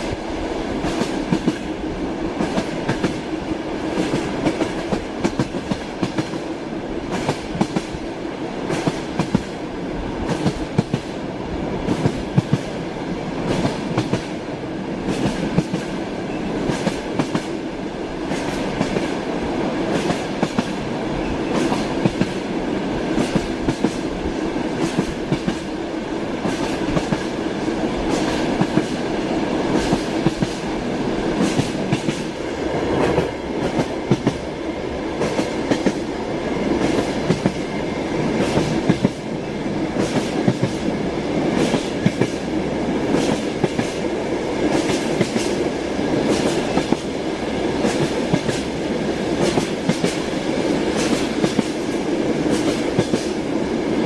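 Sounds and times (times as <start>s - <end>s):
train carriage rumble: 0.0s - 54.0s
train wheels clattering: 19.9s - 22.5s, 31.3s - 34.4s, 38.2s - 39.2s, 44.7s - 47.1s, 49.4s - 53.4s.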